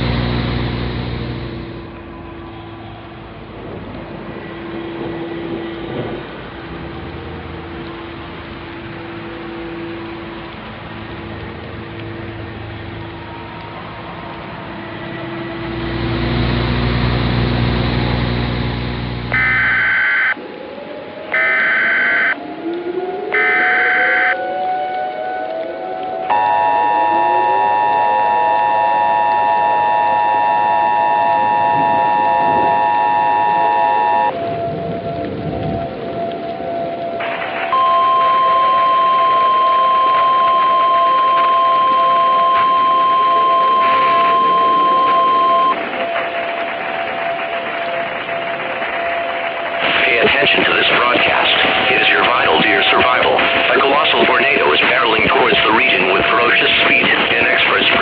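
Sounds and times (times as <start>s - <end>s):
low rumbling noise: 0.0s - 23.4s, 24.3s - 58.0s
civil defense sirens winding up: 0.0s - 58.0s
digital data tone bursts: 15.7s - 20.4s, 21.4s - 22.4s, 23.4s - 24.4s, 26.3s - 34.4s, 37.2s - 46.5s, 49.8s - 58.0s.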